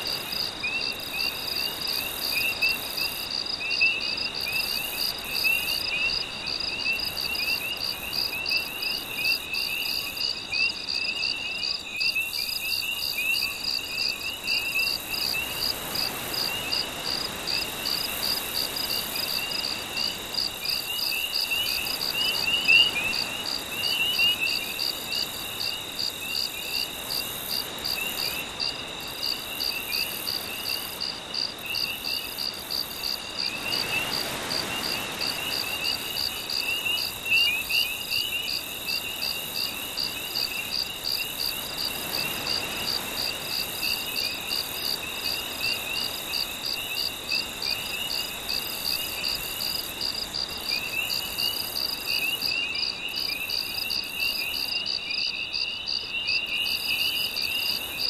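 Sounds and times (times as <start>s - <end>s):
crickets chirping: 0.0s - 58.0s.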